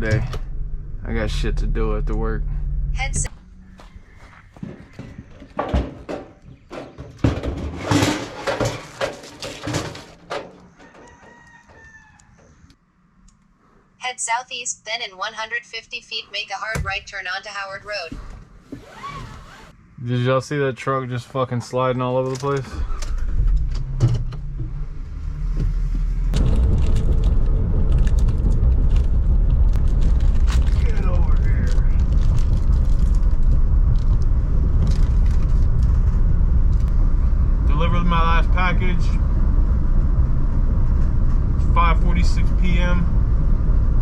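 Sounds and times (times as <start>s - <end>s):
van engine and road rumble: 0.0s - 12.8s, 17.2s - 44.0s
loud rustling and knocking: 4.5s - 11.4s
rattles and clicks: 5.4s - 11.8s
rooster crowing faintly: 10.6s - 12.7s.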